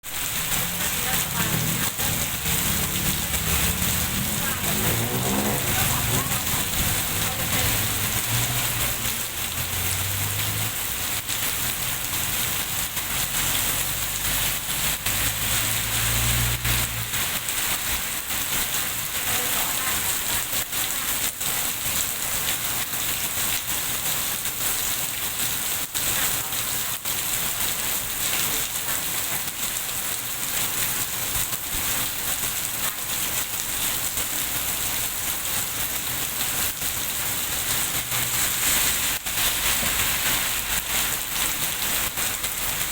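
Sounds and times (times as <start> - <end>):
steady rain falling: 0.0 - 42.9
low rumble: 0.4 - 9.0.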